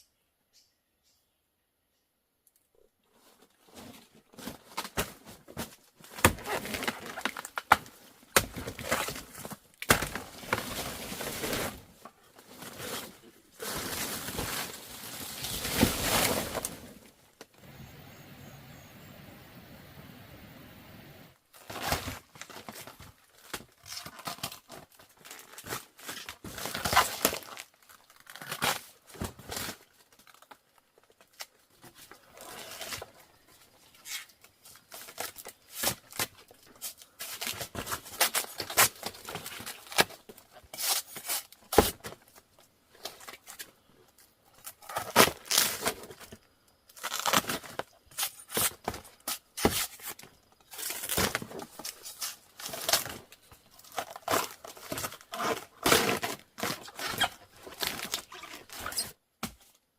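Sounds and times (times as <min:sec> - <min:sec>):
material rustling and tearing: 0:47.0 - 0:59.2.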